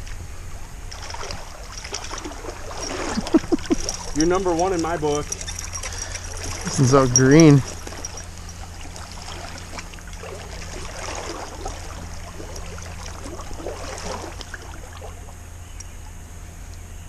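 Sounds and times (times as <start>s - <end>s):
stream water gurgling: 0.0s - 16.0s
small water splashes: 0.9s - 15.4s.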